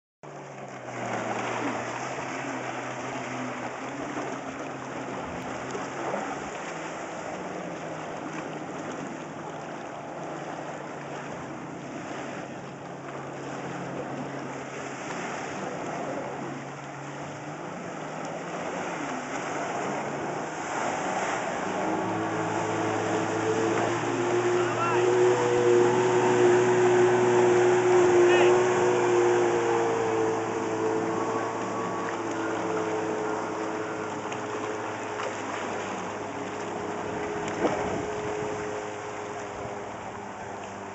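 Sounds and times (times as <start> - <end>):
jet ski engine running: 0.2 - 40.9
water rushing: 0.2 - 40.9
wind noise: 37.5 - 38.6.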